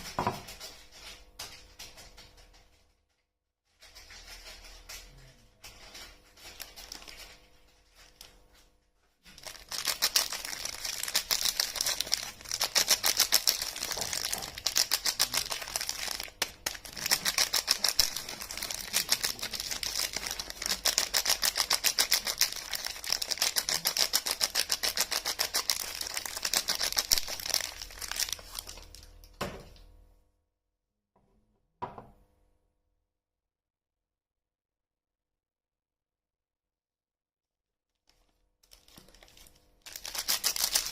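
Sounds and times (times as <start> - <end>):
packaging crinkling and tearing: 4.0 - 8.4, 9.3 - 29.4, 38.1 - 40.9.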